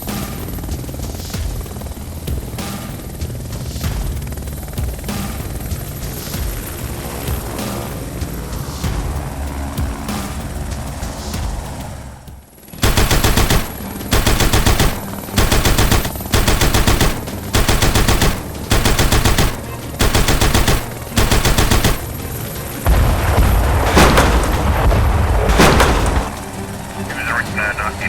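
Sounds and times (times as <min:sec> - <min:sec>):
machine gun fire bursts: 0:12.7 - 0:26.5.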